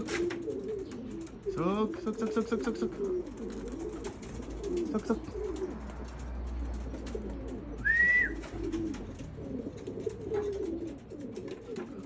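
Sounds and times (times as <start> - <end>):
pigeons cooing: 0.0 - 12.0
short high whistle: 7.8 - 8.3.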